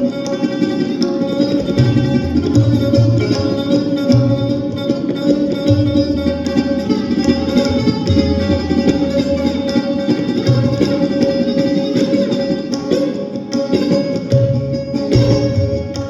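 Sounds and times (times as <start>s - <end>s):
plucked sarods: 0.0s - 16.0s
tabla drumming: 0.0s - 16.0s.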